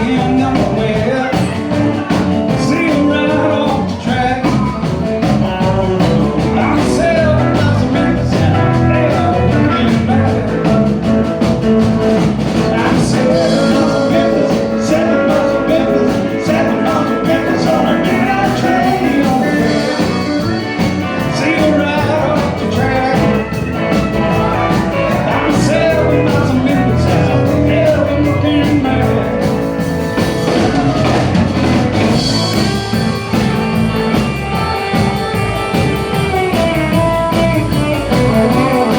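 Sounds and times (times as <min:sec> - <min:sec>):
country band playing: 0:00.0 - 0:38.9
electric guitar: 0:00.0 - 0:38.9
steady drum beat: 0:00.0 - 0:38.9.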